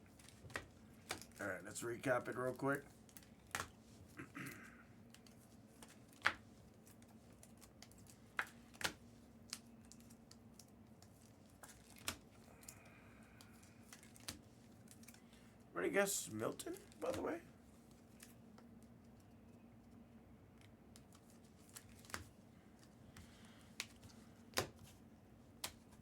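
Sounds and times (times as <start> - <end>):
card rustle: 0.0 - 3.8, 5.0 - 12.5, 13.4 - 15.4, 16.5 - 20.0, 20.6 - 25.0
cards tapping and clicking: 0.1 - 1.4, 2.5 - 3.8, 5.0 - 15.2, 16.8 - 19.2, 20.6 - 26.0.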